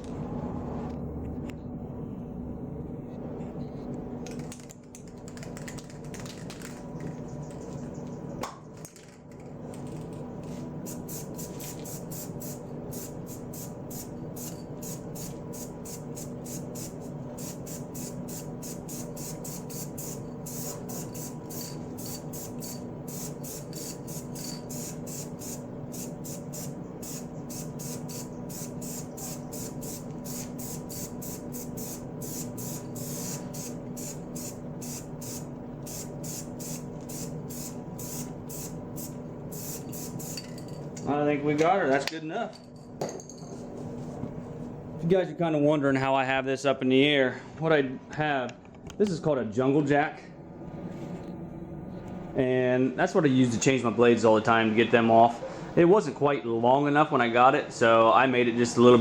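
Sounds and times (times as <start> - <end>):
steady background hum: 0.0 - 59.0
handling noises: 4.2 - 12.1
spray paint can hissing: 10.8 - 40.5.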